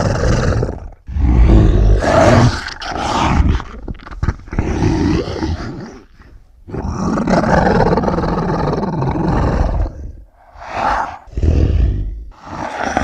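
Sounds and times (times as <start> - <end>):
monster roars: 6.8 - 13.0.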